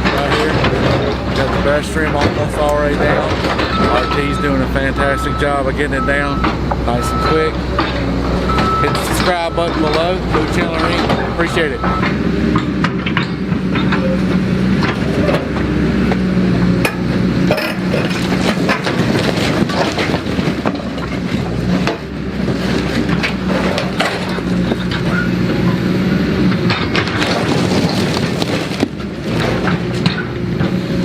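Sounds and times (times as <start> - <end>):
debris cracking and crunching: 0.0 - 4.9, 14.8 - 25.5, 26.5 - 30.8
excavator diesel engine: 0.0 - 31.0.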